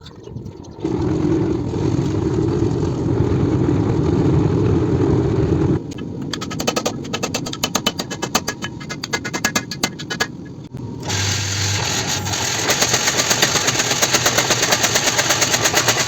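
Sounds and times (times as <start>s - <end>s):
forge burner roaring: 0.7s - 6.0s, 10.6s - 16.0s.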